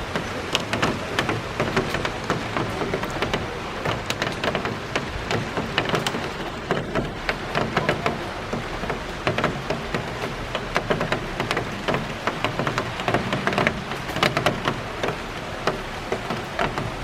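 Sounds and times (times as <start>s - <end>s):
heavy raindrops tapping: 0.0s - 17.0s
rain hissing: 0.0s - 17.0s.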